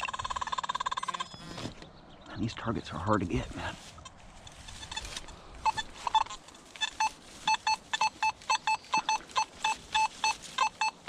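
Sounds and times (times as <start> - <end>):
metal detector beeping: 4.6 - 11.0.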